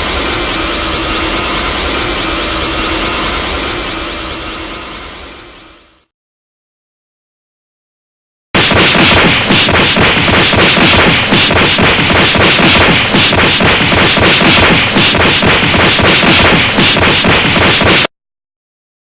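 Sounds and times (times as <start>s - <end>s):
dense rapid crackling: 8.6s - 18.1s.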